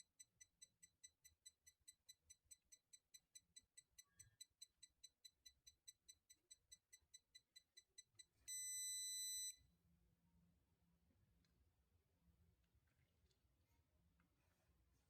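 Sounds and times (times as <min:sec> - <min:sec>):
high-pitched alarm beeps: 0:00.2 - 0:09.6.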